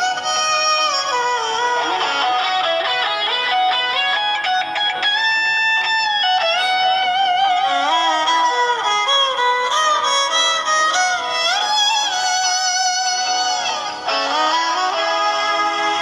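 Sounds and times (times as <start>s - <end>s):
plucked string notes: 0.0s - 16.0s
wavering melody line: 6.3s - 8.8s.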